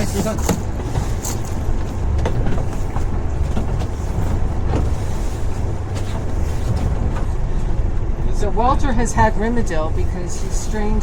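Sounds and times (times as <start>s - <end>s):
low rumble aboard sailboat: 0.0s - 11.0s.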